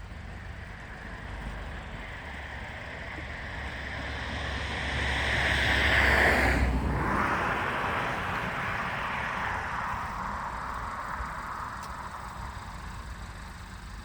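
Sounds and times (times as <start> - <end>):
car passing by: 1.0 - 11.2.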